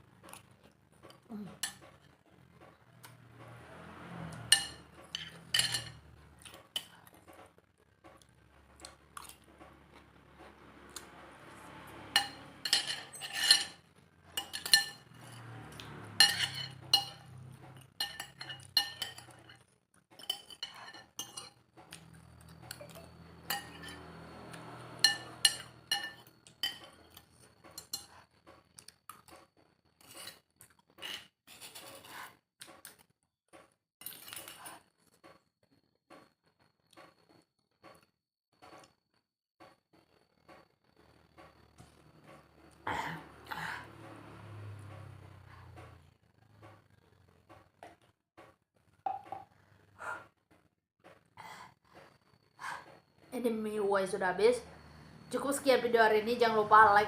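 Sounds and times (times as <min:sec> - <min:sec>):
cutlery clinking against a bowl: 0:01.0 - 0:07.4, 0:12.0 - 0:28.3.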